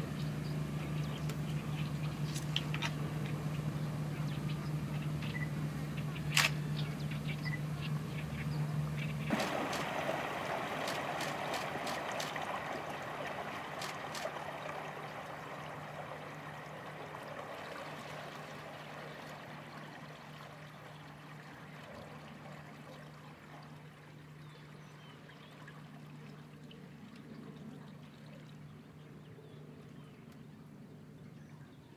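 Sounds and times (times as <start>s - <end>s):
steady low hum: 0.0s - 31.9s
water splashing and trickling: 9.2s - 29.0s
sharp clicks: 10.8s - 12.5s, 13.8s - 14.4s.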